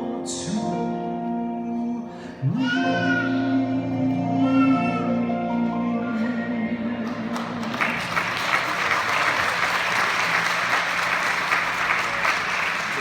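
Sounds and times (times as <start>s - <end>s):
congregation applauding: 7.0s - 13.0s.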